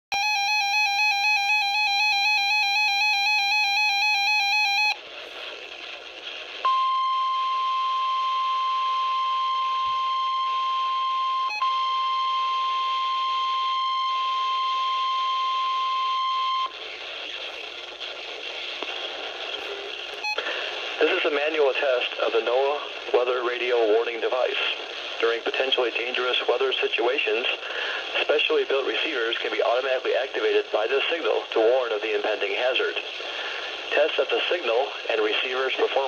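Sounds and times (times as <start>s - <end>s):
steady high alarm beep: 0.1s - 5.0s, 6.7s - 16.7s
radio static: 4.6s - 6.7s, 16.4s - 36.0s.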